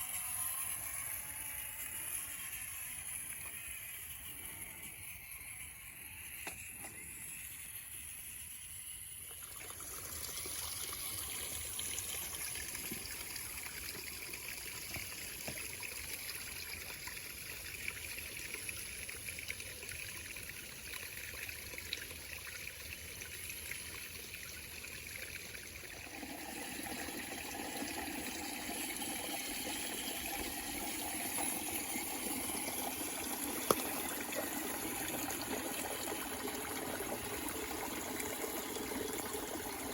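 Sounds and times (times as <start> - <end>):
waterfall trickling and splashing: 9.3 - 39.9.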